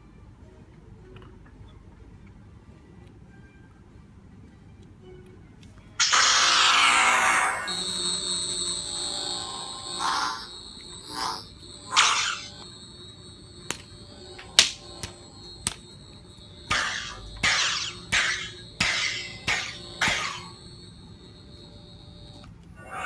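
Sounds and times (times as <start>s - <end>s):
electronic hum: 6.0s - 23.0s
sharp clash clicks: 7.7s - 22.5s.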